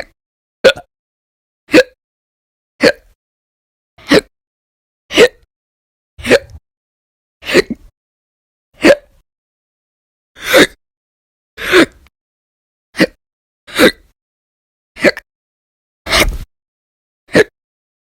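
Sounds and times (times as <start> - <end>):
woman hiccuping: 1.7 - 2.0, 2.8 - 3.1, 6.2 - 6.6.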